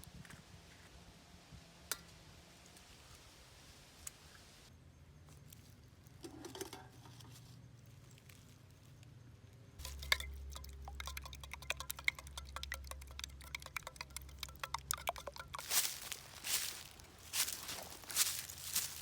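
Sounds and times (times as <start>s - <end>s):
low steady hum: 9.7s - 19.0s
campfire crackling and popping: 9.8s - 19.0s.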